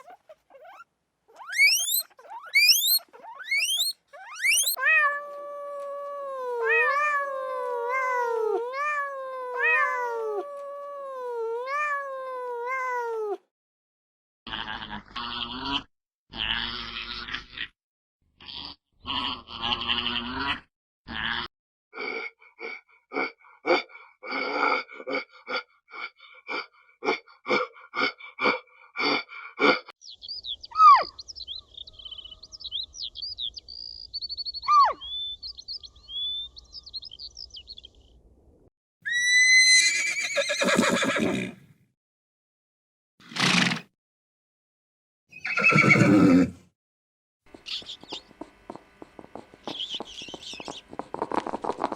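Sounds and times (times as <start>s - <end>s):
short animal calls: 0.0s - 4.8s
high chirps and whistles: 1.4s - 4.8s, 32.6s - 37.4s
horse whinny: 39.1s - 41.6s, 43.3s - 43.8s, 45.4s - 46.6s.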